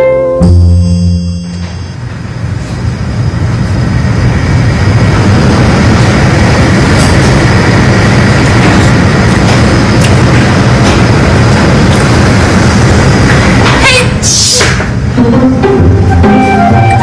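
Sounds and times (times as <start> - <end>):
vehicle running with low drone: 0.4 - 13.8.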